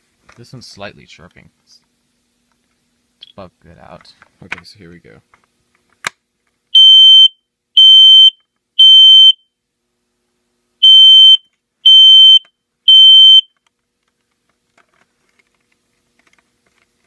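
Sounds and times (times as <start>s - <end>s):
smoke alarm beeps: 6.7s - 9.6s, 10.8s - 13.5s.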